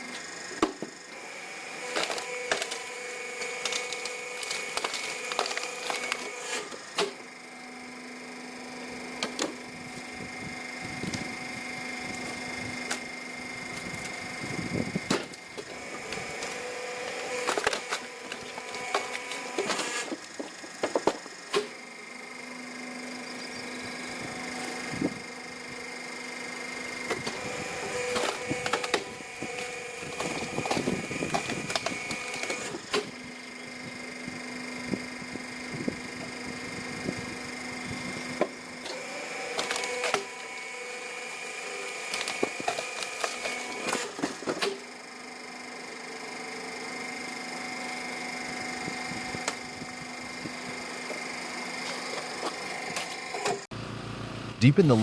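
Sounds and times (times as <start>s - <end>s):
hydraulic pump whine: 0.0s - 55.0s
wood cracking and splintering: 3.5s - 6.4s.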